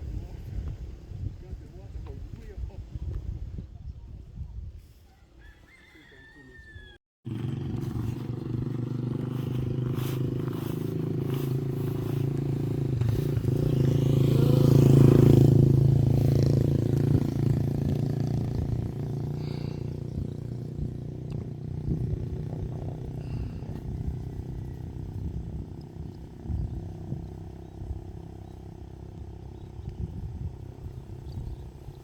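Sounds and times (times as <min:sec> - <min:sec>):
vehicle engine running: 0:07.3 - 0:32.0.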